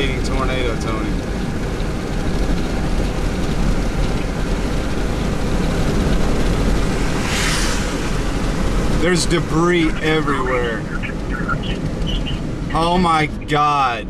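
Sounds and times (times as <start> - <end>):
road and wind noise: 0.0 - 14.0
vehicle rumbling: 0.0 - 14.0.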